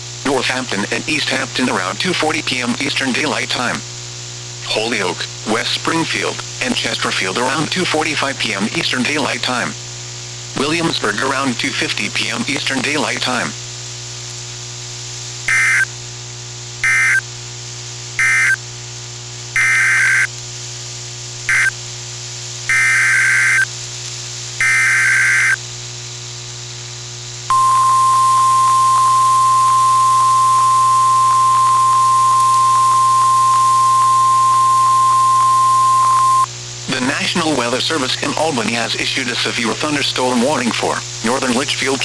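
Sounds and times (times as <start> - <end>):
low receiver hum: 0.0 - 20.4, 21.2 - 22.0, 26.8 - 42.0
single-pitch warning alarm tone: 15.5 - 15.9, 16.8 - 17.2, 18.2 - 18.6, 19.6 - 20.3, 21.5 - 21.8, 22.7 - 23.7, 24.6 - 25.6, 27.5 - 36.5
harsh digital data bursts: 19.6 - 20.3, 21.5 - 21.7, 22.7 - 23.7, 24.6 - 25.6, 27.5 - 37.4.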